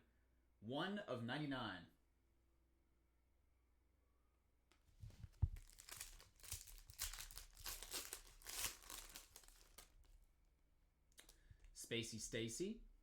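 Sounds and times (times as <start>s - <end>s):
wrapper tearing and crinkling: 5.1s - 10.2s.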